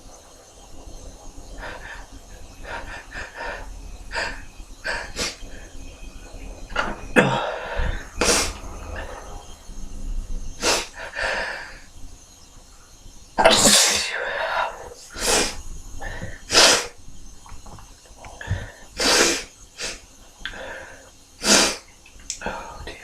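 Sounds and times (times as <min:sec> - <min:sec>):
man sneezing: 0:13.4 - 0:14.2.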